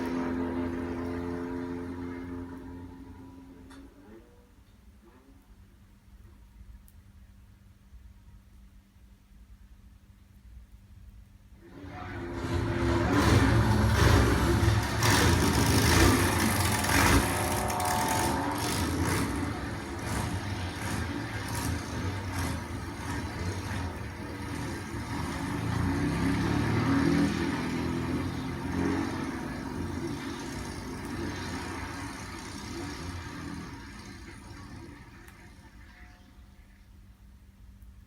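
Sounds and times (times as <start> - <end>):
racing car engines revving: 0.0 - 3.8, 11.6 - 36.2
sharp clatters: 12.6 - 26.1.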